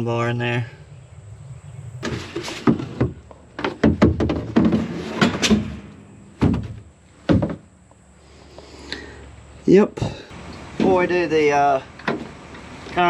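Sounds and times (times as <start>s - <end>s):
sharp metal knocks and thunks: 2.0s - 7.7s, 10.0s - 11.2s, 12.0s - 12.4s.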